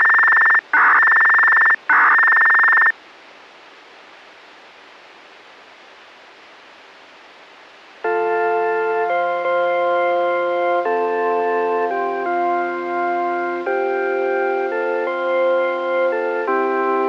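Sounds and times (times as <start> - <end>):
buzzing electronic signal tones: 0.0 - 2.9
radio channel hiss: 0.0 - 8.9.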